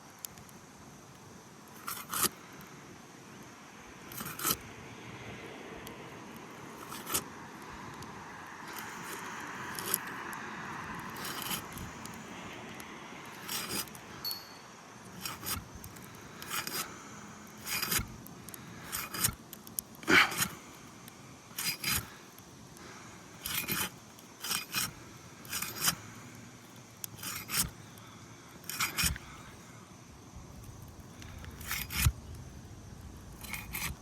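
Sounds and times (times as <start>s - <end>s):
hand tool scraping under shingles: 1.8s - 2.3s, 4.1s - 4.6s, 6.8s - 7.3s, 8.7s - 10.1s, 11.0s - 12.2s, 13.4s - 14.0s, 15.2s - 19.4s, 20.0s - 20.6s, 21.5s - 22.2s, 22.8s - 26.2s, 27.0s - 27.8s, 28.6s - 29.5s, 31.2s - 32.2s, 33.4s - 34.0s.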